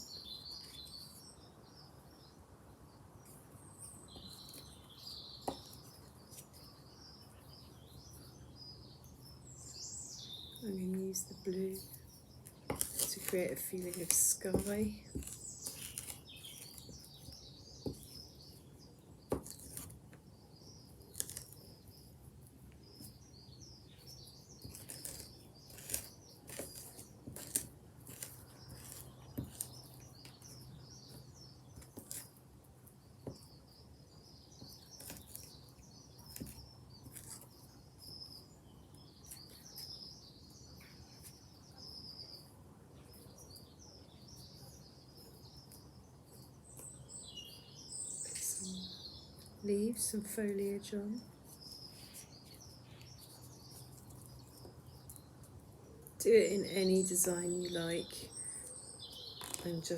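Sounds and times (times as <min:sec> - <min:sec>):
birds chirping and singing: 0:33.3 - 0:55.4.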